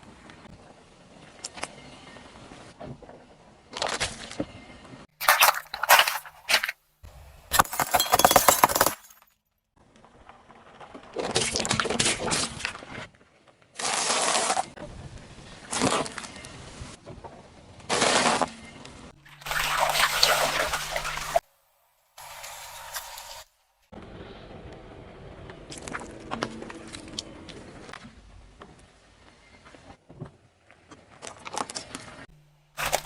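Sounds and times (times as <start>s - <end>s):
things crunching under car tyres: 5.1s - 6.8s, 32.7s - 33.0s.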